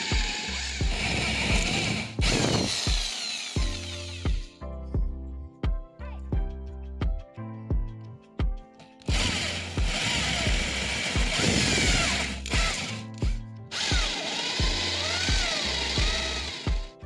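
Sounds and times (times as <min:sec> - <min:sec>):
electric power tool running: 0:00.0 - 0:04.5, 0:09.1 - 0:16.9
background music with beat: 0:00.0 - 0:17.0.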